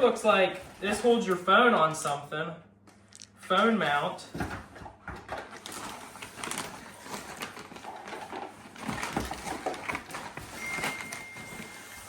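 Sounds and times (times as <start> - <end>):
rummaging through cardboard box: 0.0 - 1.6, 4.4 - 12.0.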